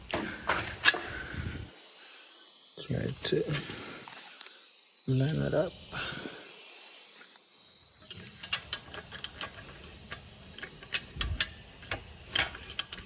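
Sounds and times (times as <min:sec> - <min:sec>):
metal washer and nut clinking: 0:08.1 - 0:13.0.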